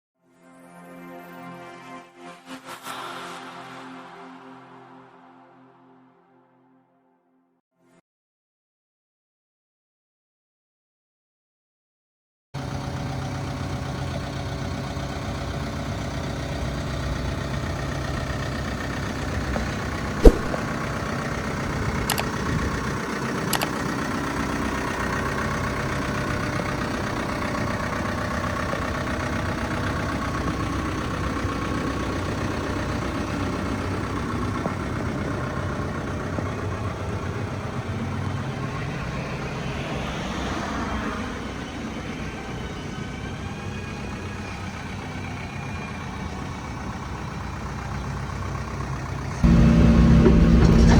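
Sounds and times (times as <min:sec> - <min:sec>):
excavator diesel engine running: 0:12.6 - 0:50.9
sharp loud knock: 0:20.2 - 0:20.7.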